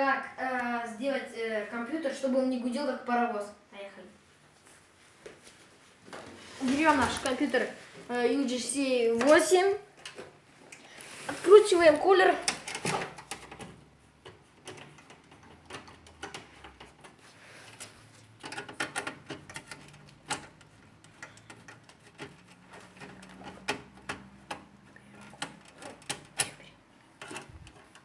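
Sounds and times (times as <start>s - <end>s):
light clicks and taps of handling: 12.4s - 28.0s.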